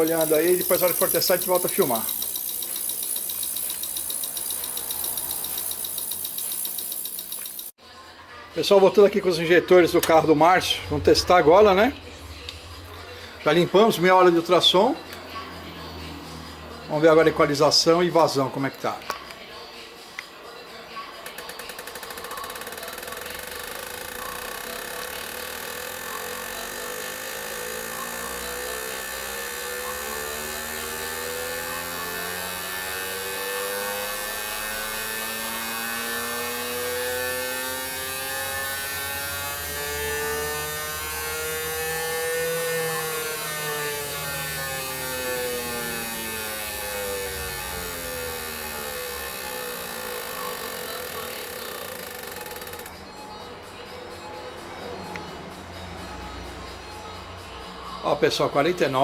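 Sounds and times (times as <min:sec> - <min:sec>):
tones rising in pitch: 0:00.0 - 0:07.7
ultrasonic cleaner hiss: 0:00.0 - 0:07.7
electric whirring hum: 0:00.0 - 0:07.8, 0:24.1 - 0:52.9
rapid even ticking: 0:00.0 - 0:07.8, 0:45.2 - 0:52.9.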